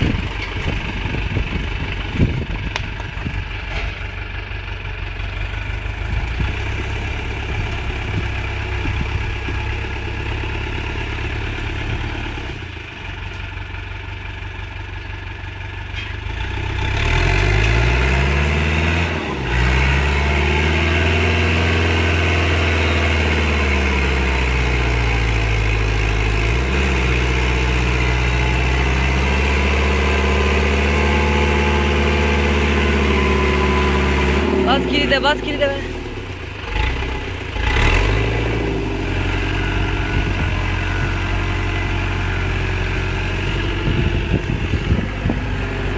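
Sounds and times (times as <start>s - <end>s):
tractor engine revving: 0.0s - 13.2s, 16.2s - 45.9s.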